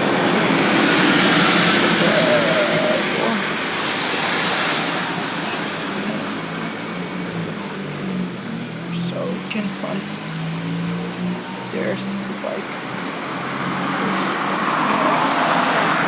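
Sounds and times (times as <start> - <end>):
bus passing by: 0.0 - 16.0.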